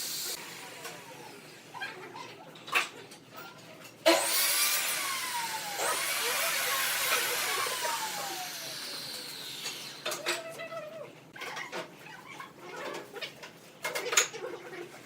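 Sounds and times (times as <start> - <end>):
lathe tool cutting wood: 4.1 - 10.1.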